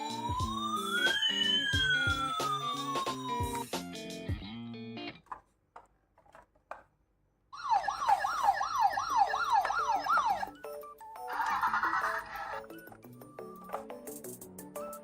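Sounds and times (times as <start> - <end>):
electronic siren sweeping: 0.0 - 3.8, 7.6 - 10.6
background music: 0.0 - 5.2, 8.8 - 15.0.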